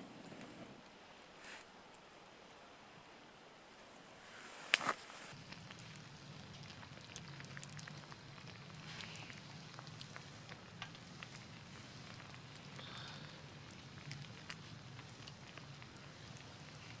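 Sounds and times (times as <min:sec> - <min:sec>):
campfire crackling: 0:03.6 - 0:17.0
fire popping and snapping: 0:04.7 - 0:17.0.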